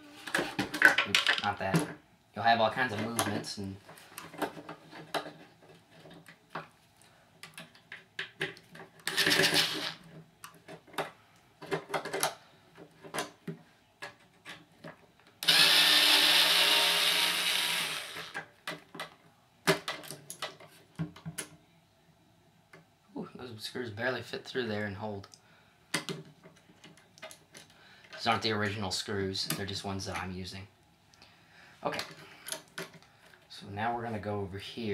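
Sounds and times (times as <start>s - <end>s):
power screwdriver running: 9.1s - 10.0s, 15.4s - 18.4s
clicks and knocks of handling metal: 25.2s - 28.8s.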